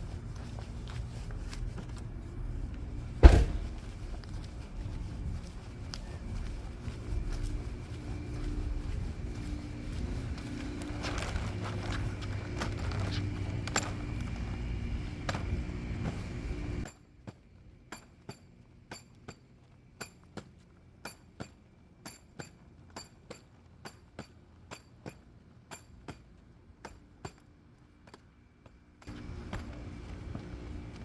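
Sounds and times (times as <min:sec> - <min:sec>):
steady low rumble: 0:00.0 - 0:16.9.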